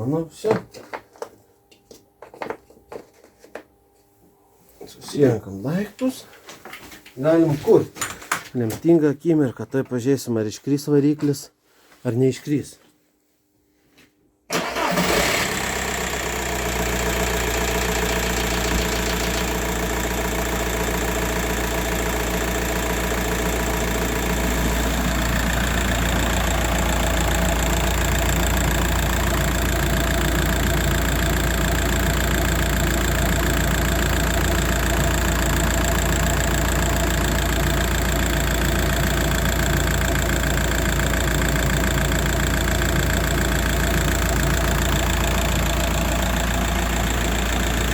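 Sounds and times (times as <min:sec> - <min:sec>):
diesel engine idling: 0:14.6 - 0:47.9.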